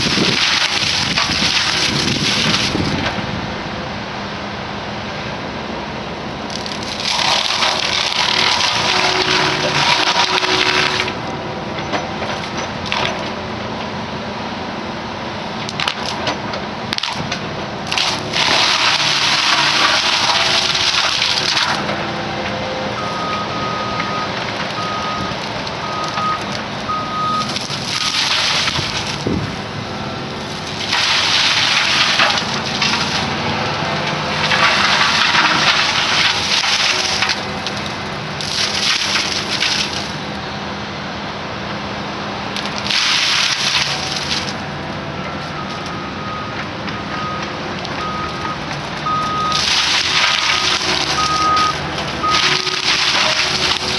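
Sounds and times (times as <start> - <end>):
mower shredding brush: 0.0 - 3.2, 6.5 - 11.3, 16.9 - 22.1, 27.4 - 40.3, 42.6 - 44.7, 47.9 - 53.9
short beeps: 23.0 - 28.2, 45.4 - 49.6, 51.2 - 52.8.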